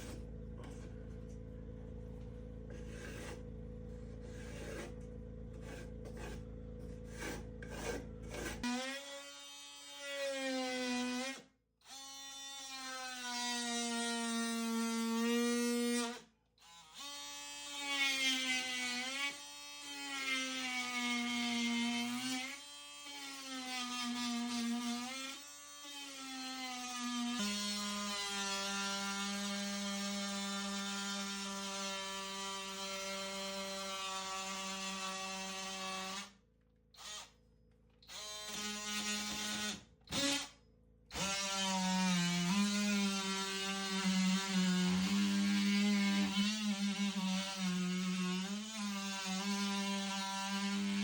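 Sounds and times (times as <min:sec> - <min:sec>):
steady low hum: 0:00.0 - 0:08.7
electric drill whining: 0:02.2 - 0:10.3, 0:37.0 - 0:37.4, 0:38.0 - 0:40.5
faint scraping strokes: 0:02.7 - 0:08.7.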